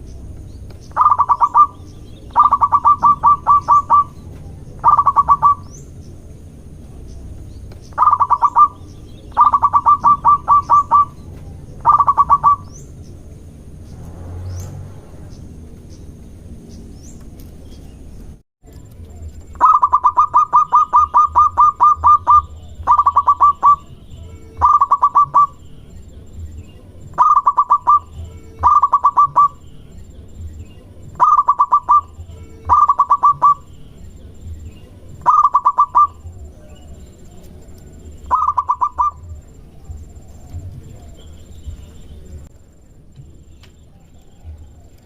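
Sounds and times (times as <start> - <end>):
dove calling staccato notes: 0.0 - 6.1, 7.2 - 13.0, 19.5 - 39.3.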